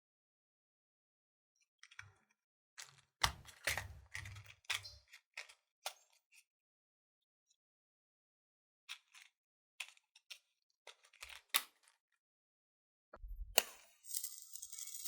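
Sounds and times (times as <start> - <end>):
low thump: 13.2 - 13.6.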